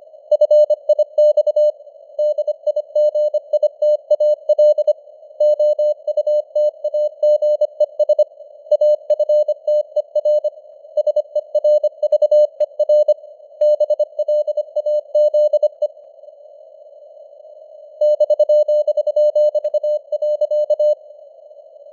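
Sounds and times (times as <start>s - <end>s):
morse code tone: 18.0s - 21.0s.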